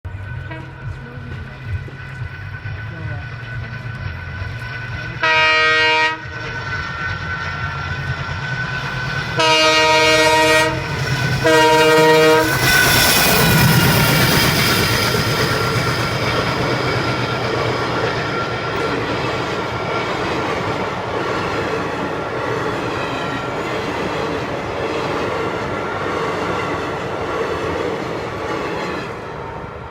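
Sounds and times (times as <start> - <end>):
train rumbling: 0.0 - 29.9
wheels clacking on rails: 0.1 - 29.9
train horn blasts: 0.4 - 0.8, 5.2 - 6.3, 9.3 - 13.8.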